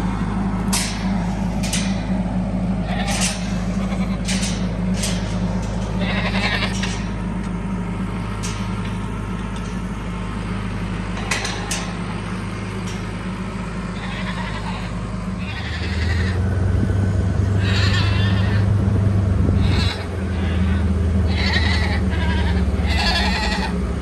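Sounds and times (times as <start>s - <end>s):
tractor engine running: 0.0s - 24.0s
goats or sheep bleating: 0.7s - 7.4s, 8.3s - 9.8s, 11.1s - 13.1s, 13.8s - 16.4s, 17.4s - 18.7s, 19.6s - 23.8s.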